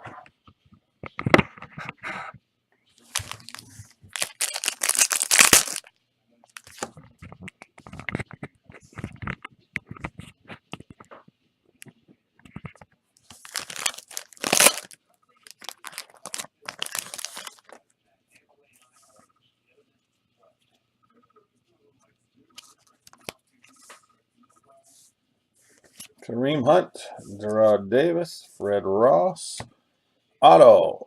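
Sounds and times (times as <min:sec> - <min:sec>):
cards rustling and clicking: 0:03.1 - 0:05.9, 0:06.6 - 0:06.9, 0:13.3 - 0:17.8
packaging tearing: 0:03.1 - 0:05.9, 0:06.6 - 0:06.8, 0:13.3 - 0:17.7.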